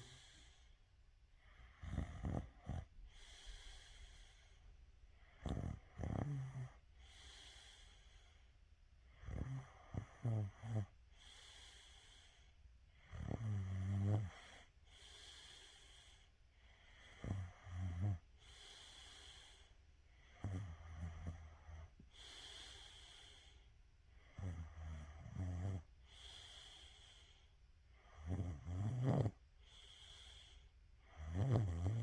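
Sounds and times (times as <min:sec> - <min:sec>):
quiet breathing: 0:00.0 - 0:32.0
person snoring: 0:01.7 - 0:04.4, 0:05.3 - 0:08.0, 0:09.2 - 0:12.0, 0:13.1 - 0:14.7, 0:17.0 - 0:19.7, 0:20.4 - 0:23.6, 0:24.3 - 0:27.4, 0:28.0 - 0:32.0.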